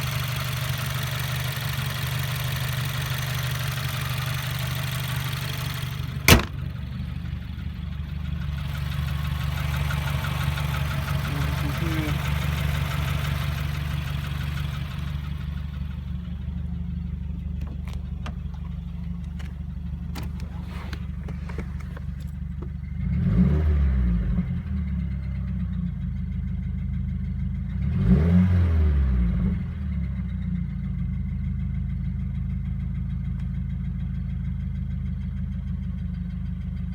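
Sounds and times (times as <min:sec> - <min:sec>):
car engine idling and revving: 0:00.0 - 0:36.9.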